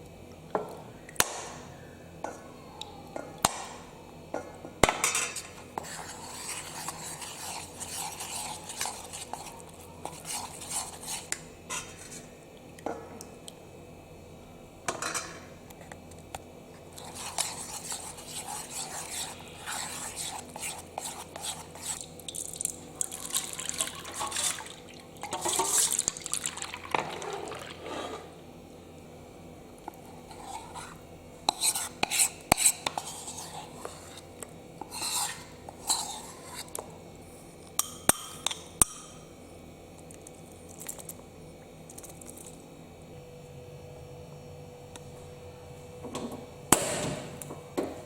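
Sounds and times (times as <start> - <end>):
utensil stirring and scraping pot: 5.1 - 12.3, 16.9 - 22.1, 23.3 - 26.2, 26.9 - 28.4, 29.9 - 36.8.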